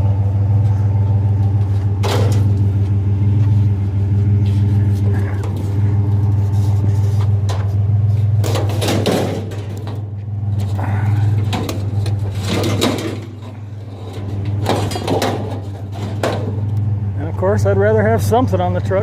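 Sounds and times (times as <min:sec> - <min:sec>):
truck engine idling: 0:00.0 - 0:19.0
metal shelves clanking: 0:01.9 - 0:02.8, 0:05.0 - 0:16.9.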